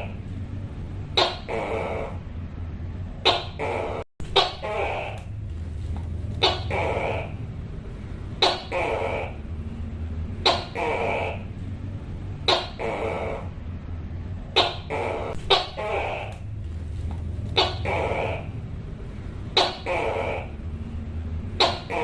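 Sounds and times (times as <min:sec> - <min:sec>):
gecko calling: 0:01.1 - 0:02.2, 0:03.2 - 0:05.4, 0:06.4 - 0:07.5, 0:08.4 - 0:09.6, 0:10.4 - 0:11.6, 0:12.4 - 0:13.6, 0:14.5 - 0:16.6, 0:17.4 - 0:18.7, 0:19.5 - 0:20.7, 0:21.5 - 0:22.0.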